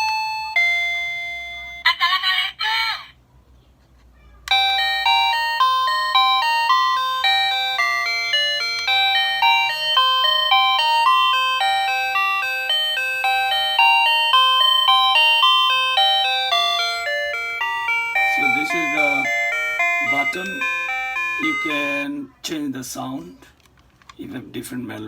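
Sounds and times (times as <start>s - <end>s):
electronic doorbell chime melody: 0.0s - 1.9s, 4.5s - 22.2s.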